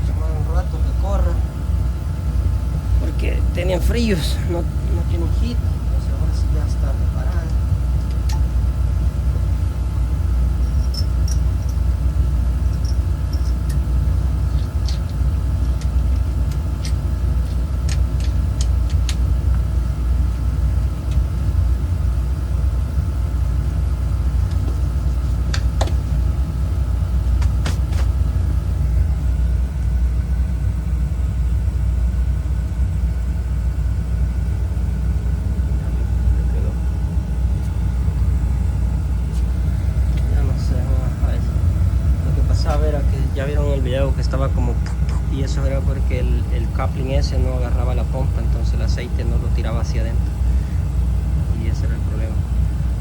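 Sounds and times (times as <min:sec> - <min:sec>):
boiler burner rumbling: 0:00.0 - 0:53.0.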